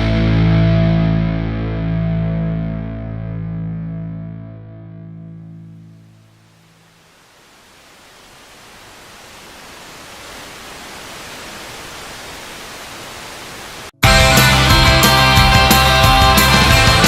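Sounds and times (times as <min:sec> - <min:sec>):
rock music with distorted guitars: 0:00.0 - 0:06.0, 0:14.0 - 0:17.0
steady noise hiss: 0:05.9 - 0:13.9.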